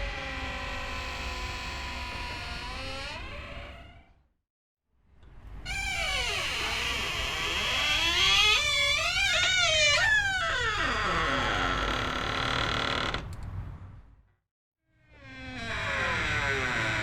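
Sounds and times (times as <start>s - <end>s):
door hinge creaking: 0.2s - 3.8s, 5.7s - 13.4s, 15.2s - 17.0s.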